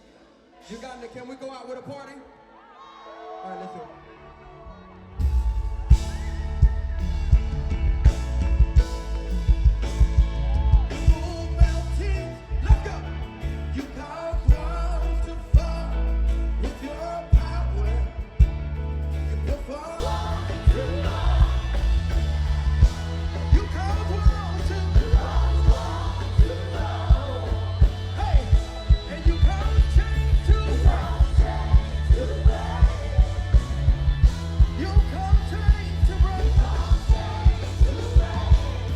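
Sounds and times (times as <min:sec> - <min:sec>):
live gospel band: 0:03.2 - 0:38.9
driving drum beat: 0:05.2 - 0:13.1, 0:19.6 - 0:38.9
heavy bass line: 0:05.2 - 0:38.9
person singing: 0:19.3 - 0:38.9.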